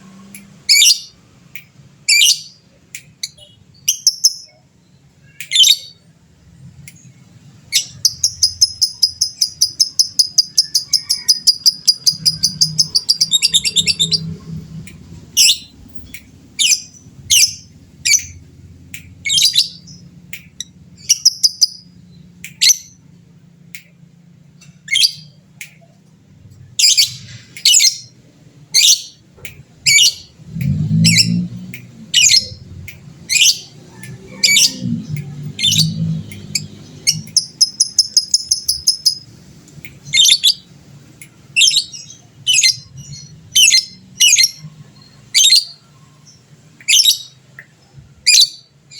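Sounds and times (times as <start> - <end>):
lovebird shrill chirps: 7.7 - 14.4, 19.2 - 23.0, 28.8 - 29.2, 29.8 - 30.3, 35.6 - 39.3, 40.0 - 40.6.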